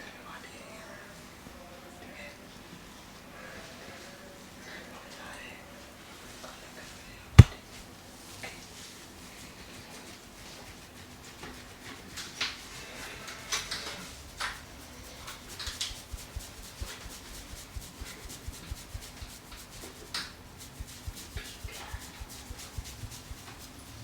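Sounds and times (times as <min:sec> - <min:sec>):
hands rubbing on head and skin: 0:16.0 - 0:23.7
soft taps on skin: 0:16.1 - 0:20.0, 0:20.7 - 0:23.6.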